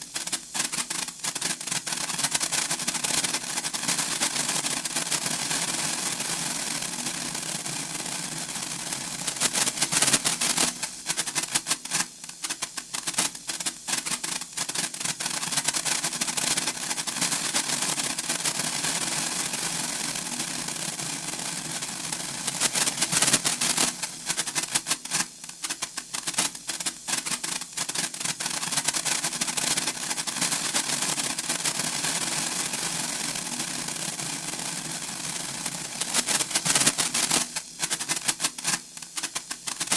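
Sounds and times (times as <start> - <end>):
sparkler crackling and fizzing: 0.0 - 39.9.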